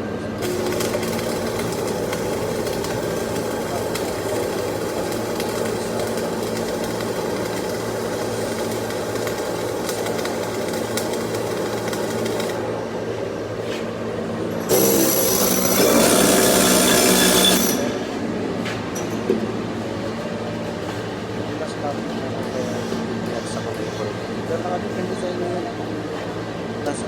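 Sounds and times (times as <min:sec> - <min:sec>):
welding arc crackle and hiss: 0:00.4 - 0:12.6, 0:14.7 - 0:18.0.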